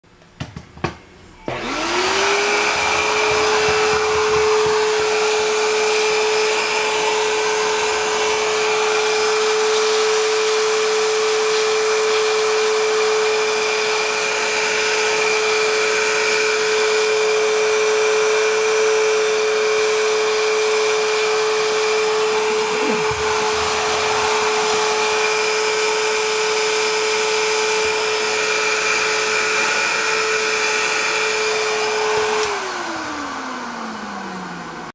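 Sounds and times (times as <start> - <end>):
vacuum cleaner motor whine: 1.3 - 34.9
vacuum cleaner switch clicks: 32.4 - 32.6.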